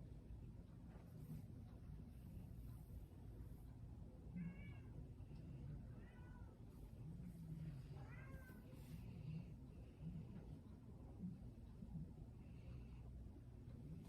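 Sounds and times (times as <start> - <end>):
cat meowing faintly: 4.3 - 5.1, 5.7 - 6.9, 7.8 - 9.0.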